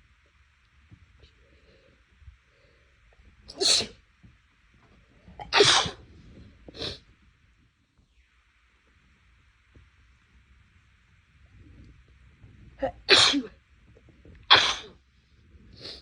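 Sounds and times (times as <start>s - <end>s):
person sneezing loudly: 3.5s - 4.0s, 5.5s - 6.0s, 12.8s - 13.5s, 14.5s - 15.0s.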